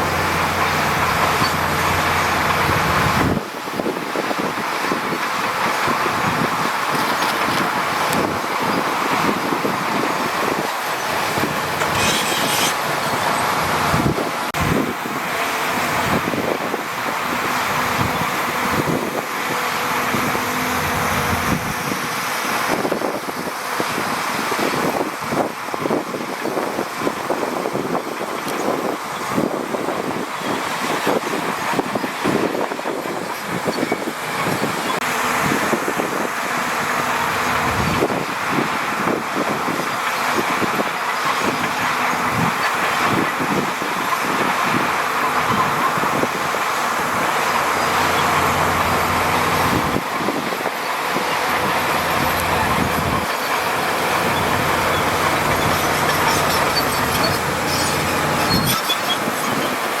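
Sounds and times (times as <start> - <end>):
heavy machinery diesel engines: 0.0 - 60.0
metallic clanks and rattles: 10.7 - 13.5.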